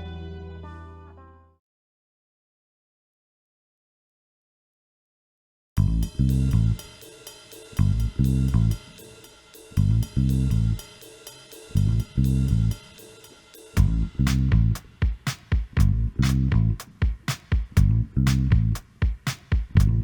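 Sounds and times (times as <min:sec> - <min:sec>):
low bass notes: 0:05.8 - 0:06.8, 0:07.8 - 0:08.8, 0:09.8 - 0:10.8, 0:11.8 - 0:12.8, 0:13.8 - 0:14.8, 0:15.8 - 0:16.8, 0:17.8 - 0:18.8, 0:19.7 - 0:20.0
drum kit with steady hi-hat: 0:05.8 - 0:20.0.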